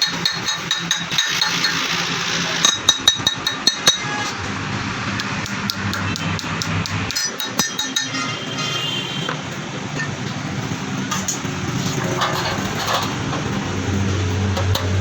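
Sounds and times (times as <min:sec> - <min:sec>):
hammer tapping on metal: 0:00.0 - 0:01.9, 0:02.6 - 0:04.2, 0:05.2 - 0:08.4.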